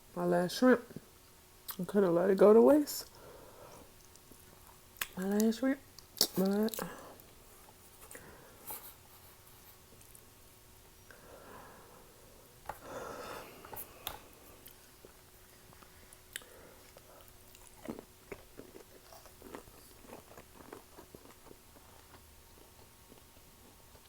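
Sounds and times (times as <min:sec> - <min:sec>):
clicking mouth sounds: 0:06.1 - 0:06.9
chewing shrimp: 0:14.0 - 0:24.0.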